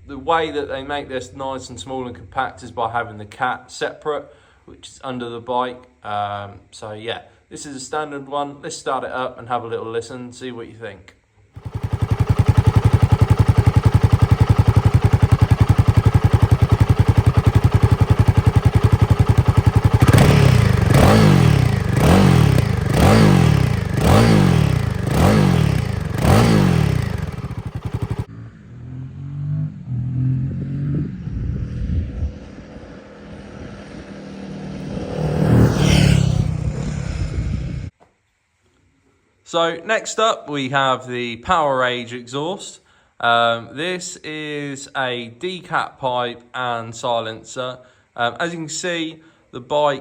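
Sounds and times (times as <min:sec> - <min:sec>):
motorcycle engine idling and revving: 0:11.6 - 0:37.9.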